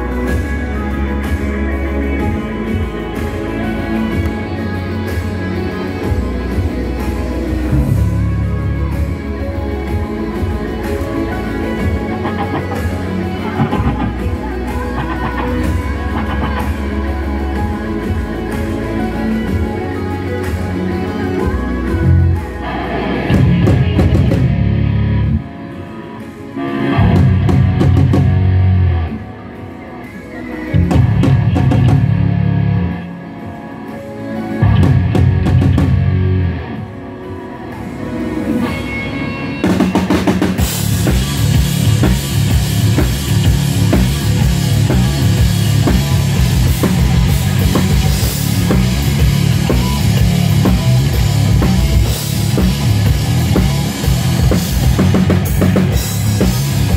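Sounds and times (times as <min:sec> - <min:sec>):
bass-heavy passages: 0:00.0 - 0:56.9
rock band playing: 0:00.0 - 0:56.9
drumming: 0:39.6 - 0:56.9.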